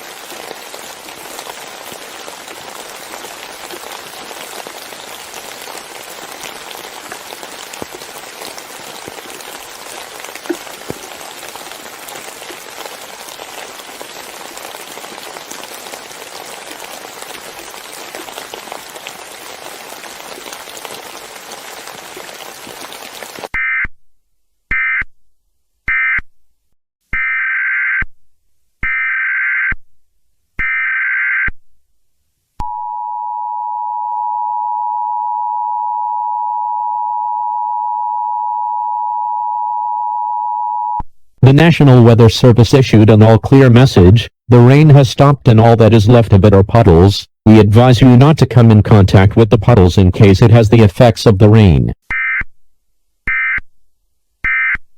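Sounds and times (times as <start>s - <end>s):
steady rain: 0.0s - 23.5s, 47.6s - 51.8s
two-tone attention signal: 32.7s - 41.0s.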